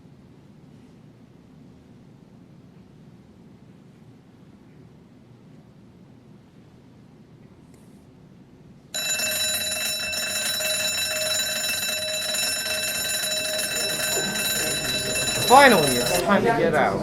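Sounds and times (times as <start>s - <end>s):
school bell ringing: 9.0s - 16.4s.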